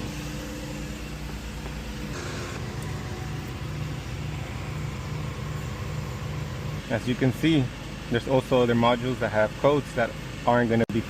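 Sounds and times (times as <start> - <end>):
car engine idling: 0.0 - 7.0.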